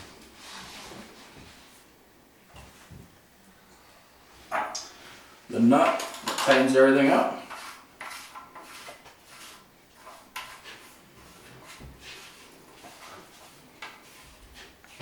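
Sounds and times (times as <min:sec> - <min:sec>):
clicks and scrapes of drain parts: 0:05.8 - 0:06.8, 0:07.4 - 0:14.1.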